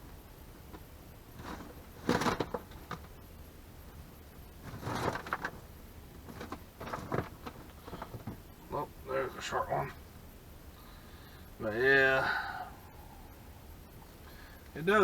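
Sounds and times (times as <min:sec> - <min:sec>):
scrap wire rustling and clattering: 0:00.0 - 0:03.2, 0:04.6 - 0:08.5.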